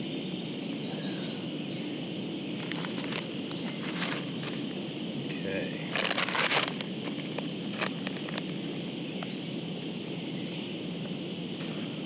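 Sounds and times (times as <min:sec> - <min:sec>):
crinkly rustling of gear: 0:02.6 - 0:04.6, 0:05.9 - 0:08.6.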